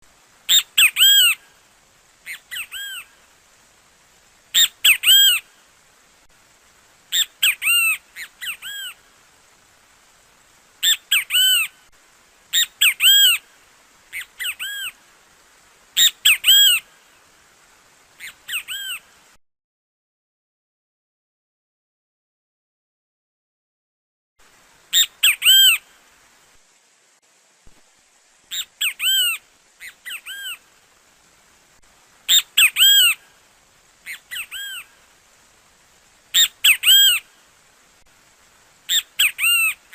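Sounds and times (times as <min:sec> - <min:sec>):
bird calling shrill whistles: 0:00.5 - 0:01.4, 0:02.3 - 0:03.1, 0:04.6 - 0:05.5, 0:07.1 - 0:09.0, 0:10.8 - 0:11.7, 0:12.5 - 0:13.4, 0:14.2 - 0:14.9, 0:16.0 - 0:16.8, 0:18.2 - 0:19.0, 0:25.0 - 0:25.8, 0:28.5 - 0:30.6, 0:32.3 - 0:33.2, 0:34.1 - 0:34.9, 0:36.3 - 0:37.2, 0:38.9 - 0:39.8.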